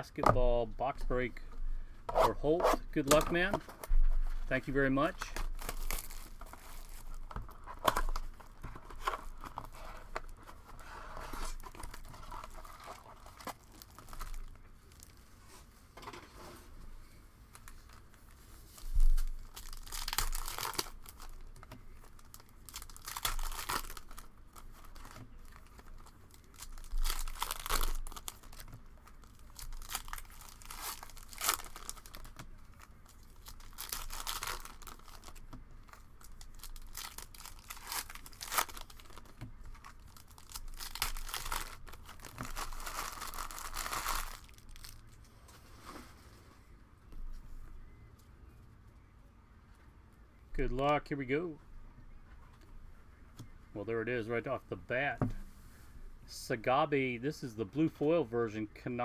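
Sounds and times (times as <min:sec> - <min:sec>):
plastic wrapping crinkling: 0:02.7 - 0:15.7, 0:17.4 - 0:46.2.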